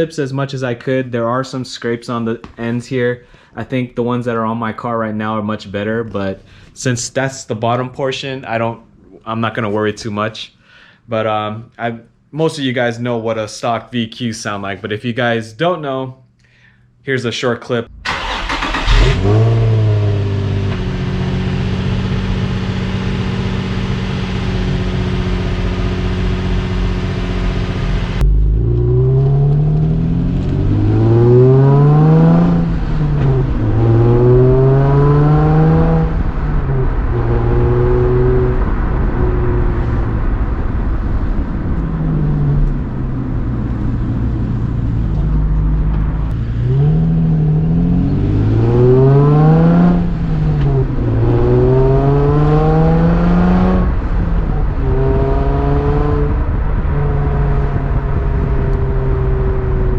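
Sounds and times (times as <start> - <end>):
car engine revving: 17.9 - 59.9
car engine starting and idling: 17.9 - 59.9.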